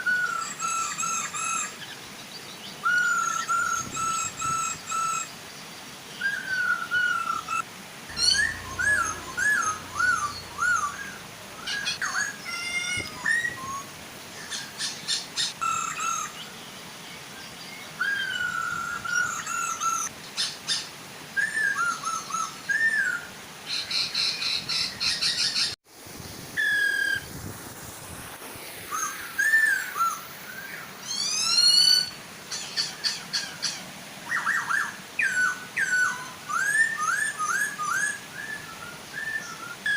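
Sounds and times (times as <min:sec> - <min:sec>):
bird singing whistled phrases and trills: 0:06.2 - 0:16.4, 0:18.0 - 0:20.8, 0:21.4 - 0:25.7, 0:28.9 - 0:39.9
waterfall rushing: 0:06.2 - 0:23.9.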